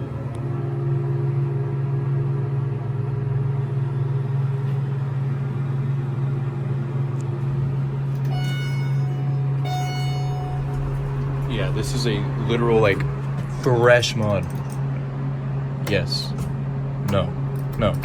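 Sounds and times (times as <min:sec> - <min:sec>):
hydraulic elevator humming: 0:03.0 - 0:18.0
electronic tone: 0:07.5 - 0:13.7.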